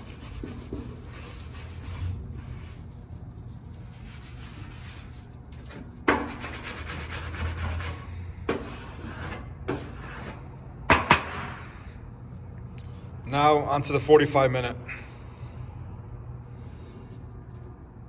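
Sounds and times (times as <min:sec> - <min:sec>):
rasping rubbing on painted metal: 0:00.0 - 0:10.4.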